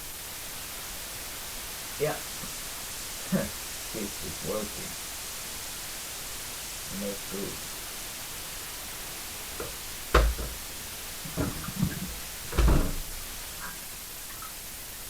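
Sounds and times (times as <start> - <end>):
knocks and clunks of hard objects: 9.6 - 13.3.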